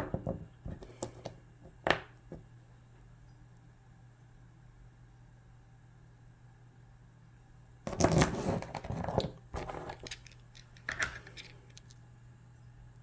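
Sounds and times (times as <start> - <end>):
rock pieces rustling and knocking: 7.9 - 12.0.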